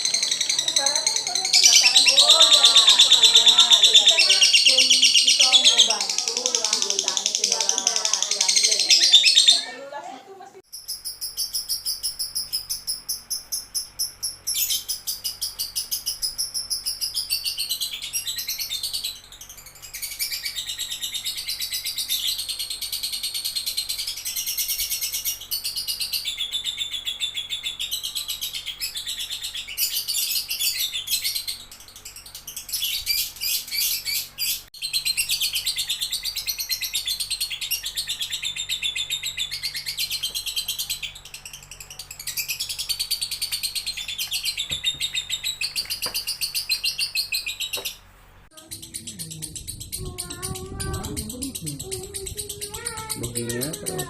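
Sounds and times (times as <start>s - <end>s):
lovebird chirping: 0.0s - 54.0s.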